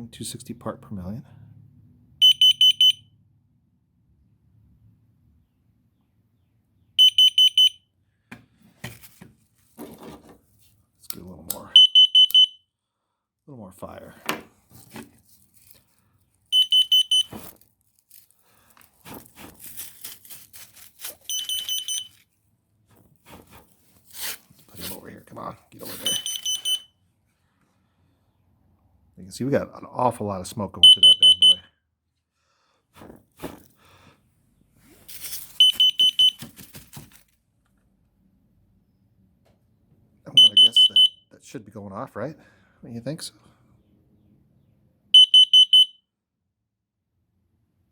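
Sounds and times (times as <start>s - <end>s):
smoke alarm beeping: 2.2s - 3.1s, 7.0s - 7.9s, 11.7s - 12.7s, 16.5s - 17.4s, 21.2s - 22.2s, 25.9s - 27.0s, 30.8s - 31.7s, 35.6s - 36.4s, 40.3s - 41.3s, 45.1s - 46.1s
rustling: 14.5s - 26.8s, 34.7s - 37.4s.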